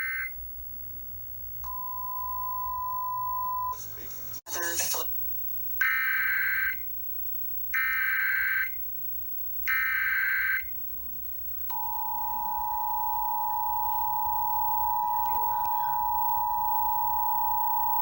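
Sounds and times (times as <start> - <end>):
two-tone attention signal: 11.7 - 18.0.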